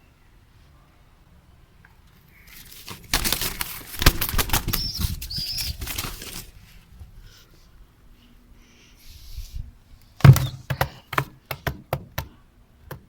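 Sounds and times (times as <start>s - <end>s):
bird wings flapping in bucket: 2.5s - 6.8s
high bird chirps: 4.6s - 6.1s.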